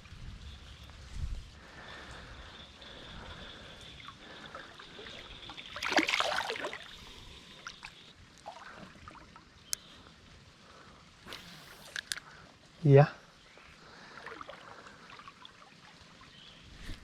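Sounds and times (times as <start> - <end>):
creek trickling: 1.5 - 17.0
water splashing: 4.0 - 9.6.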